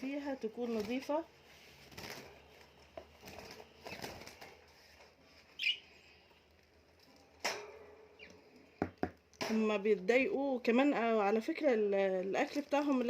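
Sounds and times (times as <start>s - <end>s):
birds fluttering wings: 0.6s - 5.2s
bird high chirp: 5.5s - 6.2s.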